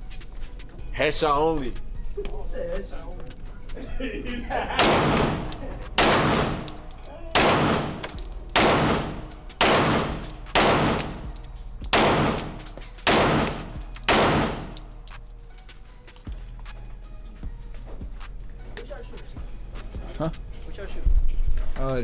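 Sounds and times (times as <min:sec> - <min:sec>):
pistol shots echoing: 0:04.8 - 0:15.2.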